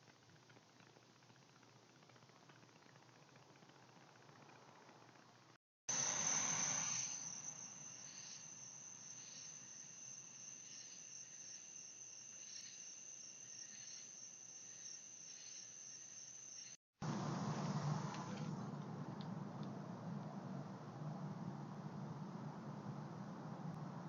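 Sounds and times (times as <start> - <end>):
crickets trilling: 5.9 - 16.8.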